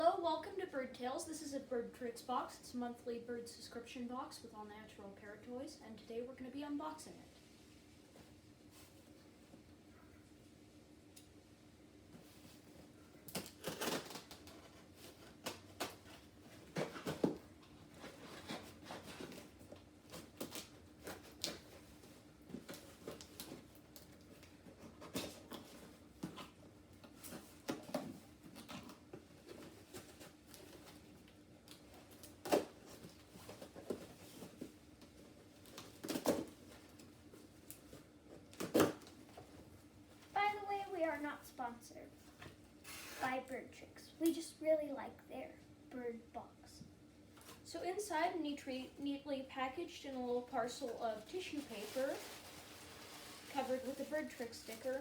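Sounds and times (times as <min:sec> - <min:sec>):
packaging rustling: 0:13.2 - 0:39.6, 0:50.7 - 0:55.0.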